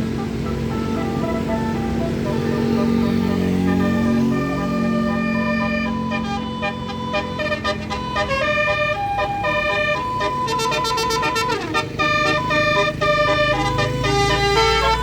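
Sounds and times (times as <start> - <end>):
bus engine low rumble: 0.0 - 15.0
musical air horn tune: 0.0 - 15.0.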